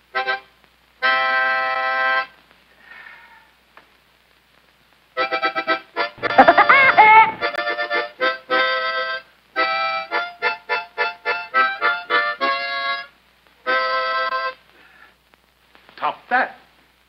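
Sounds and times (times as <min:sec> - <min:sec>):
accordion chord stabs: 0:05.2 - 0:14.6.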